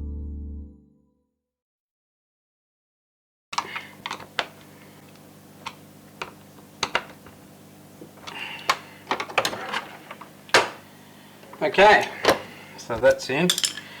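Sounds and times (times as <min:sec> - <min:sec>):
plastic clicks and knocks: 0:06.2 - 0:07.2.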